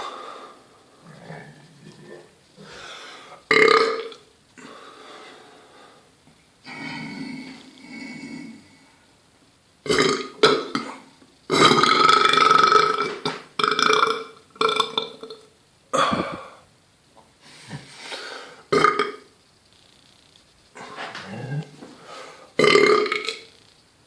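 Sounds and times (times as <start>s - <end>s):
person belching: 3.5s - 4.2s, 9.8s - 16.6s, 18.7s - 19.3s, 20.8s - 21.7s, 22.6s - 23.5s.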